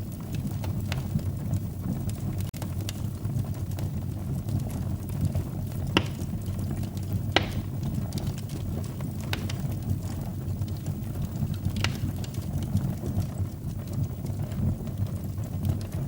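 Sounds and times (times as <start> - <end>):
fire crackling: 0.0 - 16.0
fire rumbling: 0.0 - 16.0
sharp pops from fire: 0.3 - 1.1, 4.4 - 12.8.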